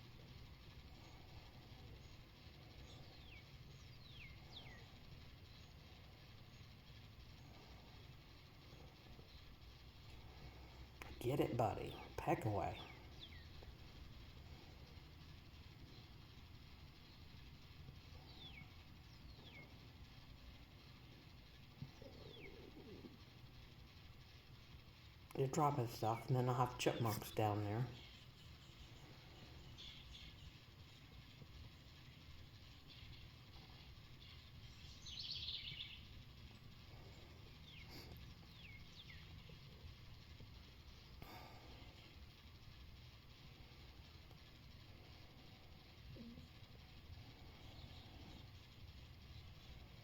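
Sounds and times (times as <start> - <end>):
songbird buzzy trill: 0.0 - 50.0
songbird chirps: 0.0 - 50.0.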